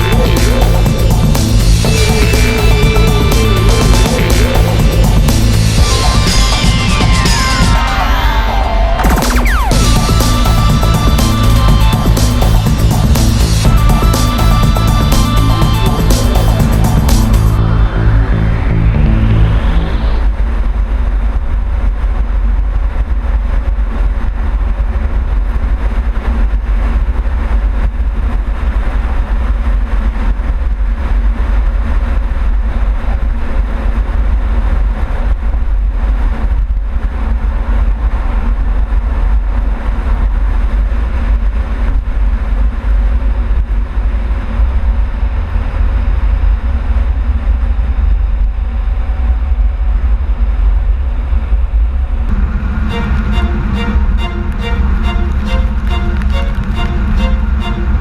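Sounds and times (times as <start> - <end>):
car exhaust rumble: 0.0 - 6.8, 9.6 - 58.0
road noise: 52.2 - 58.0.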